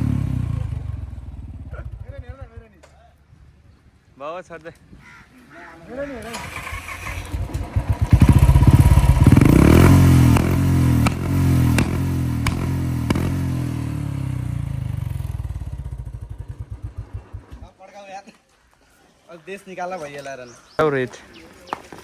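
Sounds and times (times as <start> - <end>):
motorcycle engine revving: 0.0 - 2.9, 6.2 - 17.8
exhaust backfire pops: 7.3 - 17.7.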